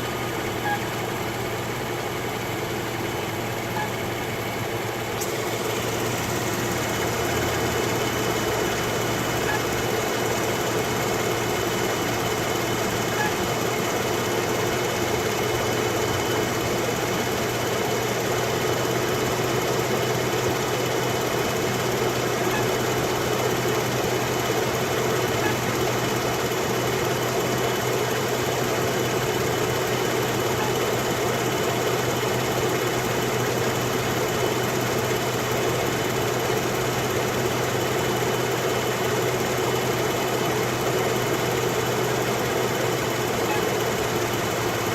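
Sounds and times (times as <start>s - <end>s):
car engine idling: 0.0s - 44.9s
water pump squeal: 13.0s - 13.5s, 30.4s - 30.9s, 43.4s - 43.8s.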